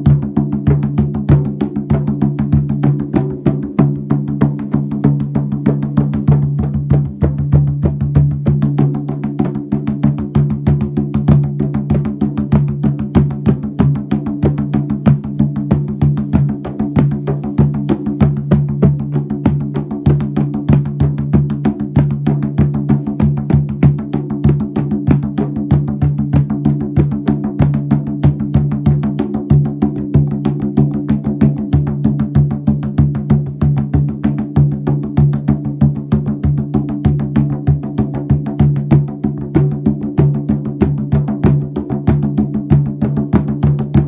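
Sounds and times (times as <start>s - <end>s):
drum beaten in fast rhythm: 0.0s - 44.0s.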